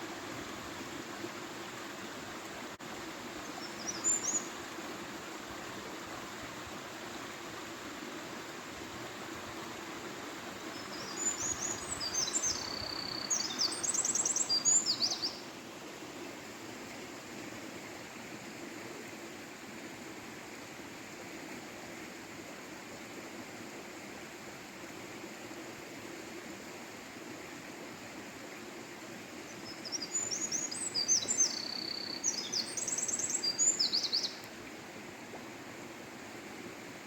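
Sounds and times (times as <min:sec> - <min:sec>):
wren singing trills: 0:10.8 - 0:15.4, 0:29.6 - 0:34.5.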